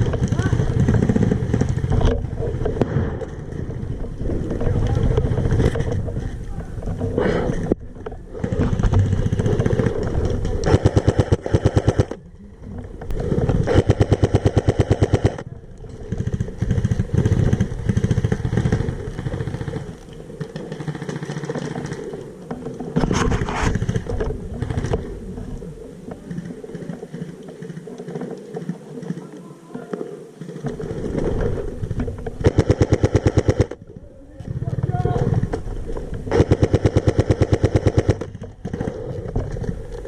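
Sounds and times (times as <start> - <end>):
airsoft rifle full-auto bursts: 10.7 - 12.2, 13.7 - 15.4, 20.6 - 22.0, 32.4 - 33.8, 36.3 - 38.4.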